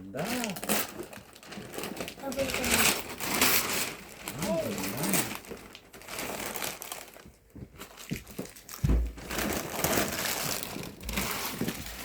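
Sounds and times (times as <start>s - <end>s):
packaging crinkling and rustling: 0.2s - 12.0s
dull low thump: 8.8s - 9.2s.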